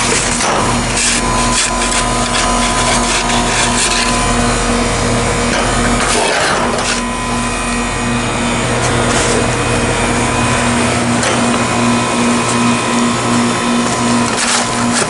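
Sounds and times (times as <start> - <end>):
heat pump humming: 0.0 - 15.0
snow being scraped: 0.8 - 4.6.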